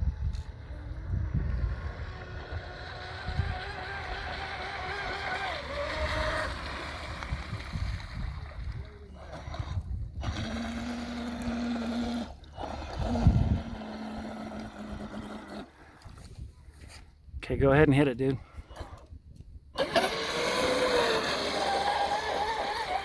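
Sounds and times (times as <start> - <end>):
wind on microphone: 0.0 - 17.4
electric motor whining: 0.1 - 7.7, 9.1 - 15.8, 19.8 - 23.0.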